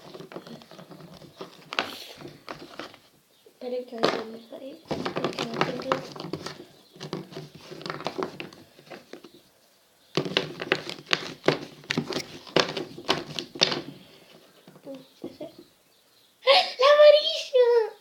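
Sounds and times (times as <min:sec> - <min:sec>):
slime being stirred squelching: 0:00.0 - 0:03.0.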